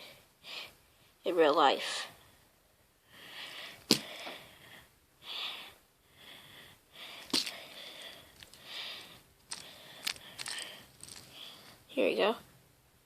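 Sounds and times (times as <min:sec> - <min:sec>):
person breathing and sniffing: 0:03.1 - 0:11.9.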